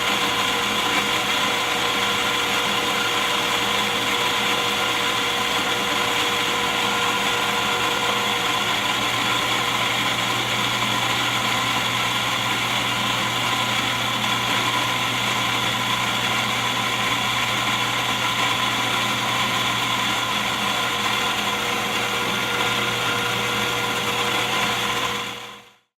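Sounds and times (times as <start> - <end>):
coffee grinder motor whining: 0.0 - 25.9.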